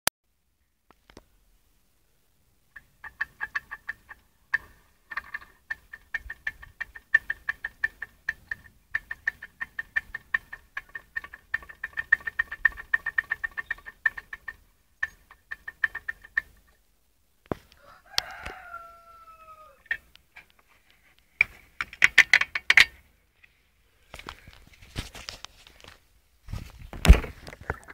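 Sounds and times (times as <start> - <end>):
rapid irregular knocking: 3.0 - 16.8.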